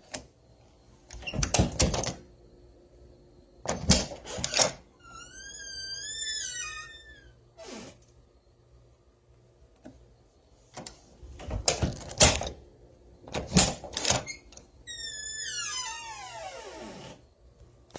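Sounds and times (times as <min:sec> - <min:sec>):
door hinge creaking: 0:03.7 - 0:08.0, 0:13.3 - 0:17.2.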